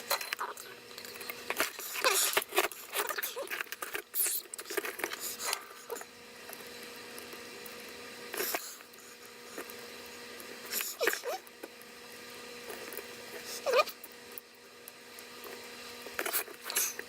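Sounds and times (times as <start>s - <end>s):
small clicks taps and scrapes: 0.0s - 5.7s, 14.3s - 17.0s
faint steady hum: 0.0s - 17.0s.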